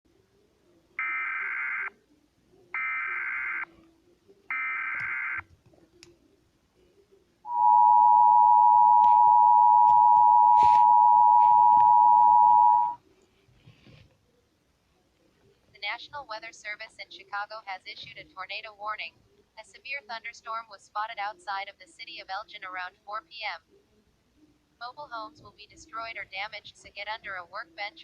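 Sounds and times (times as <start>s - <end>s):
digital data tone bursts: 7.5s - 13.0s
two-tone attention signal: 7.5s - 13.0s.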